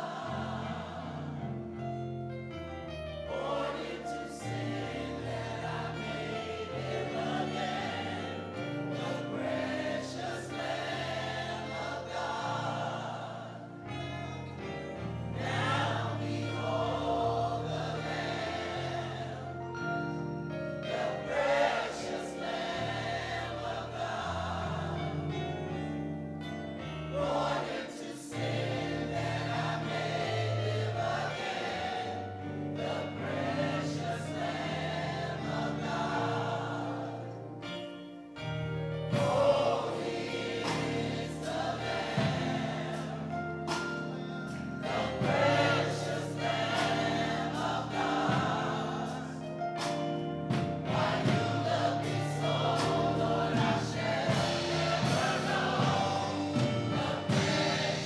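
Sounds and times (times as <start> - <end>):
choir singing gospel music: 0.0 - 58.0
instrumental accompaniment: 0.0 - 58.0.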